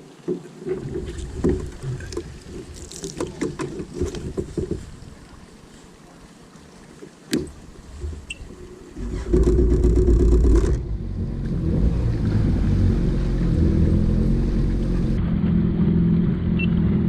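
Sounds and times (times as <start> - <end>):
watercraft engine starting and running: 7.3 - 17.0.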